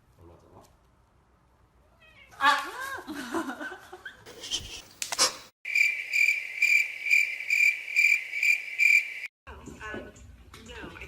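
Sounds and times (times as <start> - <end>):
brief rustle: 4.3 - 5.5
sharp click: 4.9 - 5.4
high insect chirping: 5.7 - 9.3.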